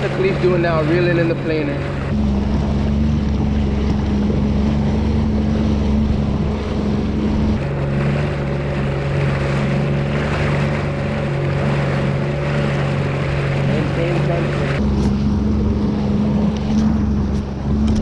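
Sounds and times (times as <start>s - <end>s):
jet ski engine running: 0.0s - 18.0s
water noise: 0.0s - 18.0s
wind: 0.0s - 18.0s.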